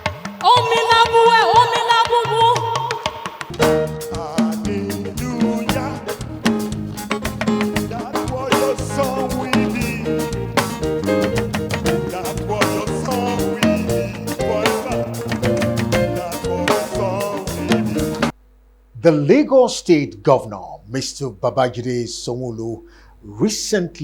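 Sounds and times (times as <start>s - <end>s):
upbeat band music: 3.4s - 18.4s.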